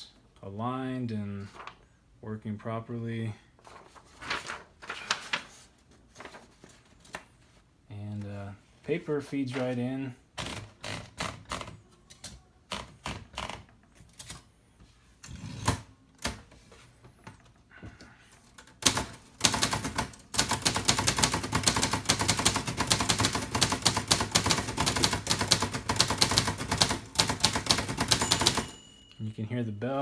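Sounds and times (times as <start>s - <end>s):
fast typewriter typing: 10.4s - 11.8s, 18.6s - 28.8s.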